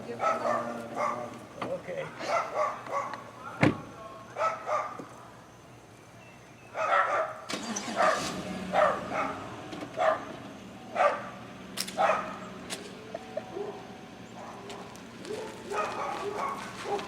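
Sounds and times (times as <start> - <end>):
dog barking: 0.1 - 1.3, 2.2 - 3.6, 4.4 - 5.0, 6.7 - 10.3, 10.9 - 11.4, 12.0 - 12.4, 13.5 - 13.8, 14.4 - 17.0
low vehicle hum: 7.4 - 17.0.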